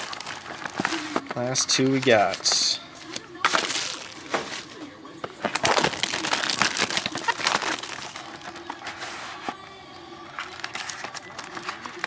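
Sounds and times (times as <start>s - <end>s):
plastic wrapping crinkling and tearing: 0.0s - 9.6s, 10.2s - 12.0s.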